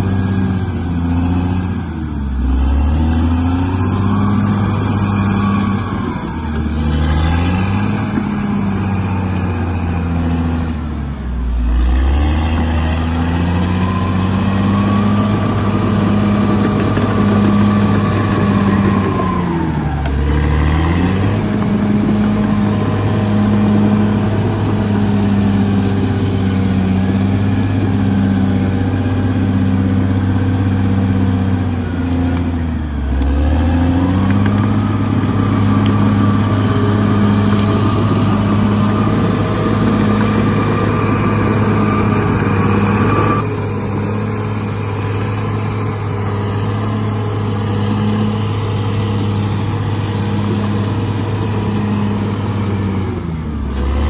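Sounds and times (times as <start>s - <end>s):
bulldozer diesel engine running: 0.0s - 54.0s
high-pitched whine: 34.5s - 53.2s.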